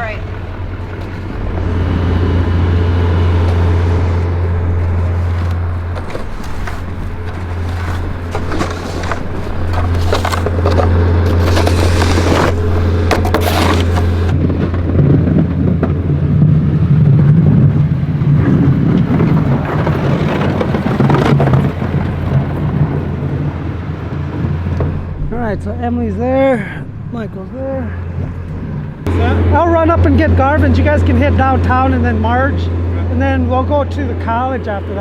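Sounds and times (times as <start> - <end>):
scraping and crackling: 0.0 - 16.6, 18.2 - 29.1
higher engine tone: 0.0 - 35.0
truck engine drone: 0.0 - 35.0.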